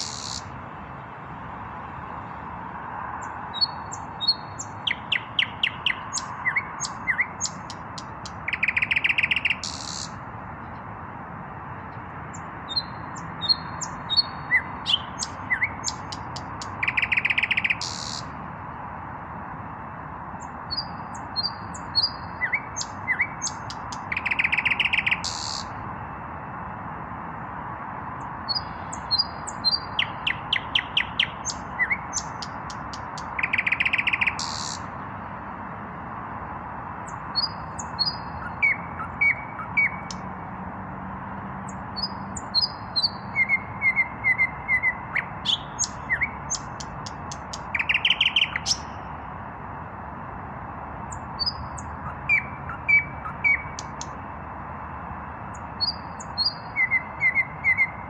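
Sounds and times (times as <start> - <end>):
nightingale singing: 0.0 - 0.6, 3.1 - 10.9, 11.8 - 18.4, 20.4 - 25.8, 28.2 - 35.0, 37.0 - 40.4, 41.6 - 49.2, 51.0 - 54.4, 55.5 - 58.0.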